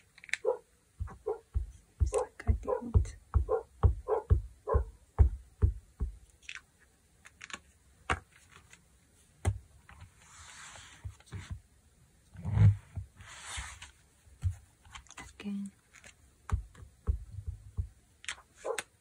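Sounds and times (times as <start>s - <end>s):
stamp knocking on fabric: 1.0s - 6.2s, 16.5s - 18.0s.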